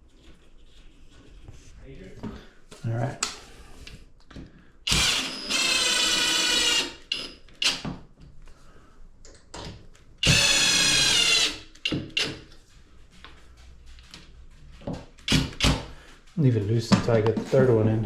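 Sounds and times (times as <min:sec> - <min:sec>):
power drill driving a screw: 0:04.9 - 0:07.8, 0:10.2 - 0:12.4, 0:15.3 - 0:15.8.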